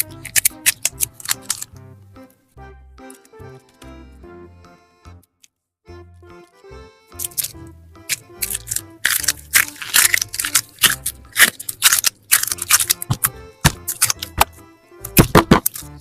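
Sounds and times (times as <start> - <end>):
crisp clicks and snips: 0.0 - 1.8, 7.2 - 16.0
soft background music: 0.0 - 16.0.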